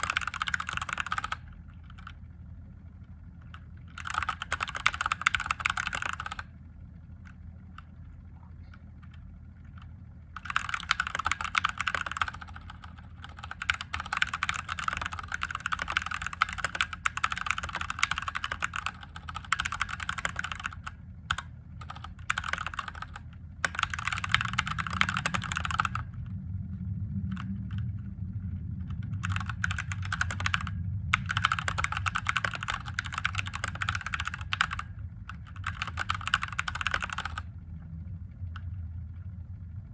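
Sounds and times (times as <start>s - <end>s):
typing on a mechanical keyboard: 0.0s - 2.2s, 3.4s - 6.5s, 8.8s - 26.1s, 28.9s - 37.5s
low steady hum: 0.0s - 39.9s.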